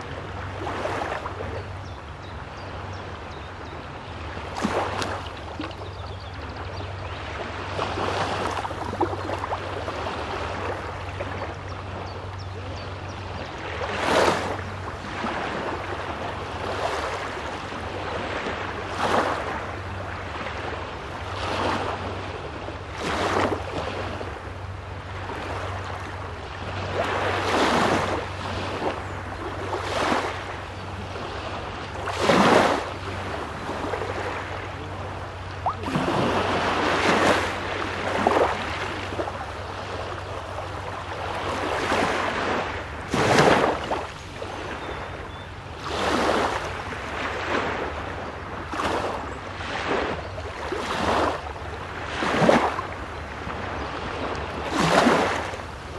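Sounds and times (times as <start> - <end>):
small waves breaking on shore: 0.0 - 55.9
steady low hum: 5.2 - 45.8.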